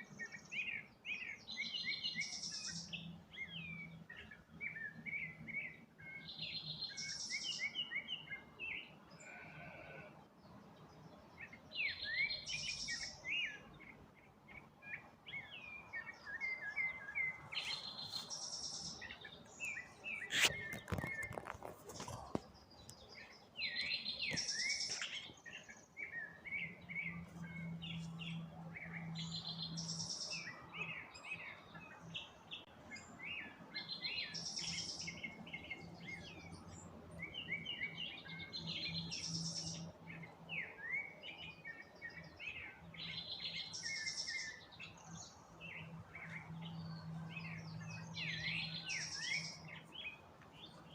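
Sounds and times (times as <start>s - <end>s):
birds singing and chirping: 0.0s - 50.9s.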